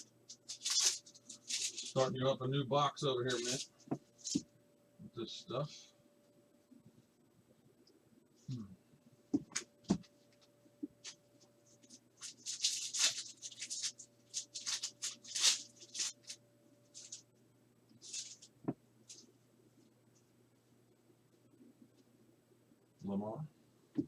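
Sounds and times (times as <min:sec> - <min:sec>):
plastic packaging crinkling and tearing: 0:00.0 - 0:02.1, 0:03.3 - 0:04.4, 0:12.2 - 0:17.2, 0:18.0 - 0:18.5.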